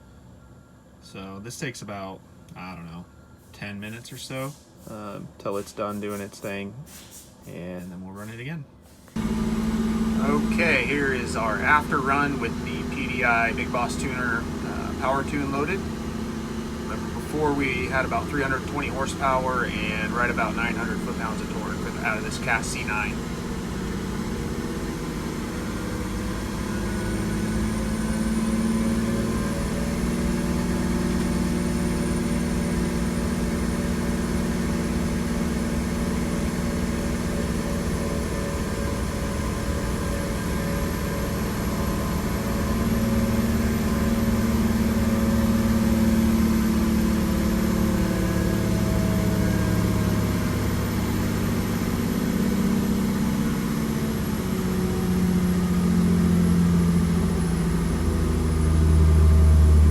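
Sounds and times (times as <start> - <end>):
diesel engine running under load: 8.8 - 59.9
faint high whine: 9.2 - 32.7.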